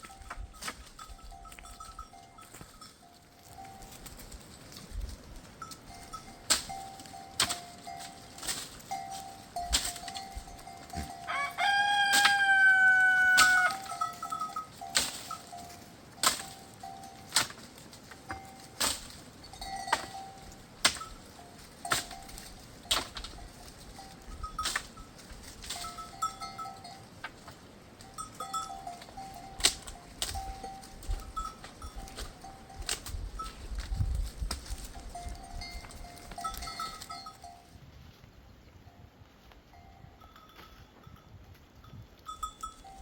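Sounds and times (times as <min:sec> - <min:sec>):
rooster crowing: 0:11.2 - 0:14.0.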